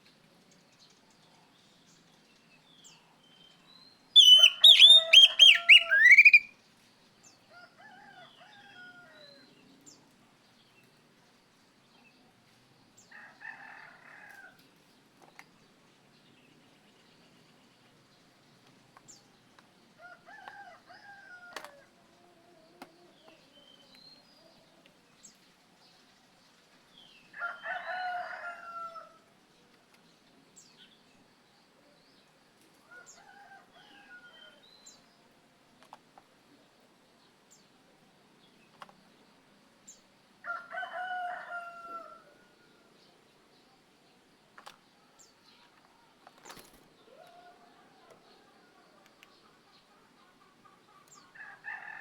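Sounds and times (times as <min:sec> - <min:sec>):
rooster crowing: 0:04.2 - 0:06.4, 0:27.4 - 0:29.2, 0:40.4 - 0:42.5
high bird chirps: 0:04.2 - 0:06.5.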